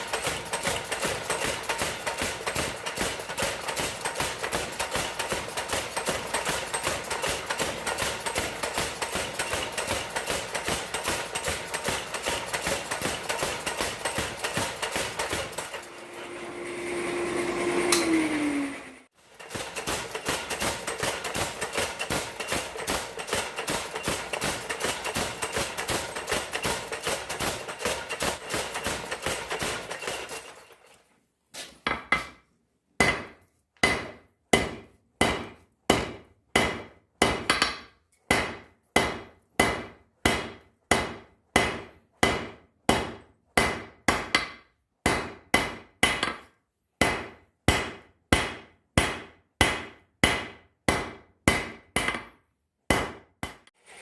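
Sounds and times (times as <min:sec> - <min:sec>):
hammer striking steel: 0:00.0 - 0:18.4, 0:19.3 - 0:30.8, 0:33.0 - 0:53.8.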